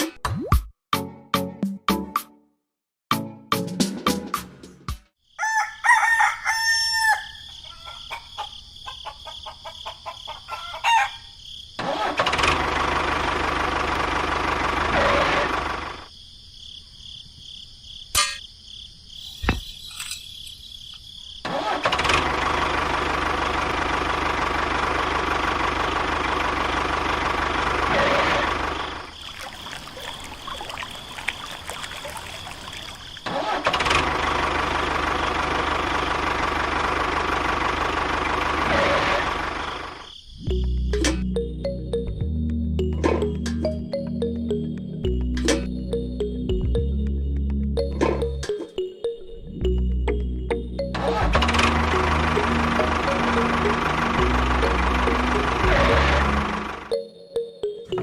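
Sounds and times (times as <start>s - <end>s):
rooster crowing: 5.3s - 11.4s
small engine running: 11.8s - 16.1s, 21.4s - 30.3s, 32.4s - 40.0s, 51.1s - 56.9s.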